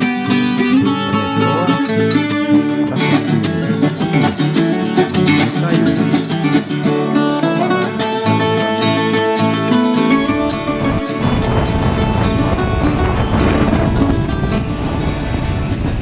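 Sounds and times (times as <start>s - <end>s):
plucked acoustic guitar music: 0.0s - 16.0s.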